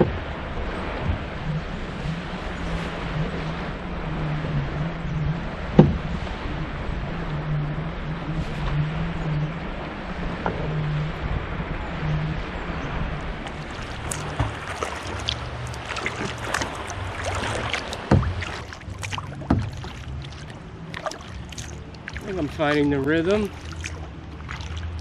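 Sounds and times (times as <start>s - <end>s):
low rumble of wind and water: 0.0s - 25.0s
sharp knocks: 5.8s - 6.0s, 18.0s - 18.6s, 19.4s - 20.0s
paddle splashing in water: 13.2s - 25.0s.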